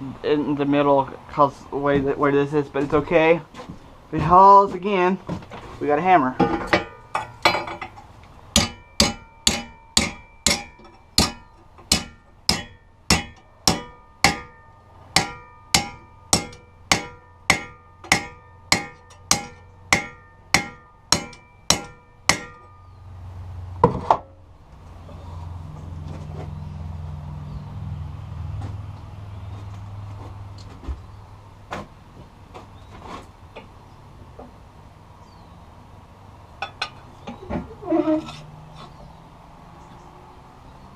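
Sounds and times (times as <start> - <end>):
low hum: 6.5 - 31.5
hammer striking steel strip: 8.5 - 22.8.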